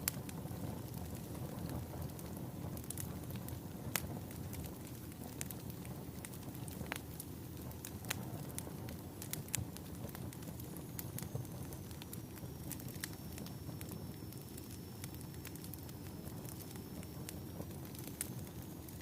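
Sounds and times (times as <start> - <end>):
fire crackling and popping: 0.0 - 19.0
fire flames rumbling: 0.0 - 19.0.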